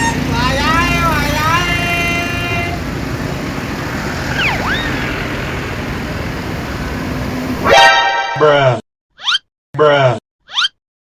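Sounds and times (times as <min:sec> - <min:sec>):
road traffic passing: 0:00.0 - 0:07.8
short sliding high tones: 0:07.5 - 0:08.7.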